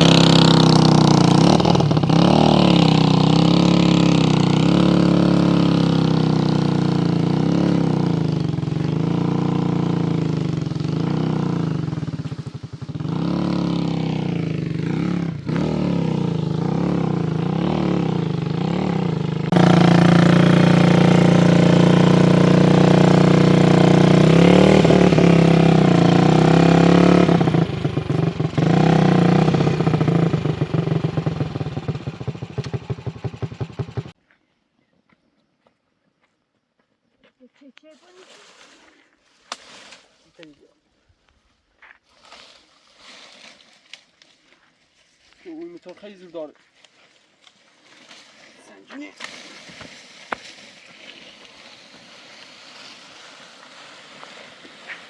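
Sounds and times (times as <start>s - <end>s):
small motorcycle engine revving: 0.0s - 34.2s, 49.2s - 55.0s.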